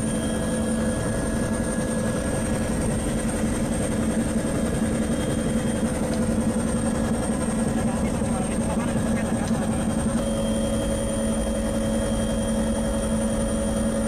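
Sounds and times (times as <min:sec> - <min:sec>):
helicopter engine and rotor drone: 0:00.0 - 0:14.0.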